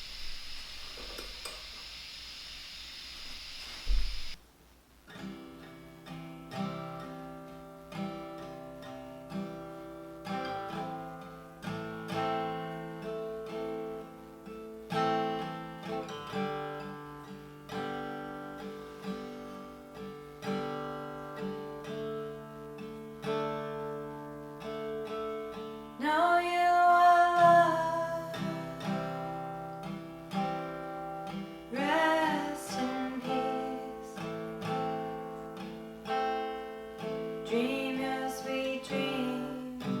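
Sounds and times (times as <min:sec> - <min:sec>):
acoustic guitar plucked chords: 0:05.1 - 0:40.0.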